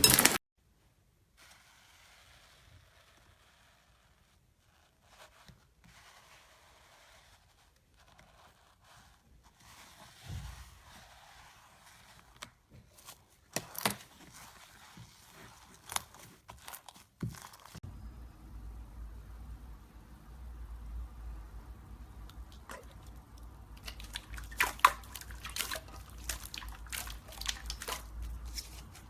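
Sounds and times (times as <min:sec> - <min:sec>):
slime crackling: 0:22.4 - 0:29.0.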